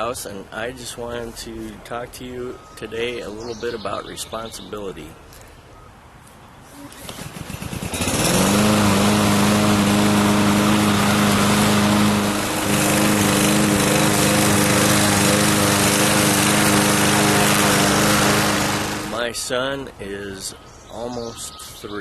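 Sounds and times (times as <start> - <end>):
machine motor running: 7.1 - 19.2.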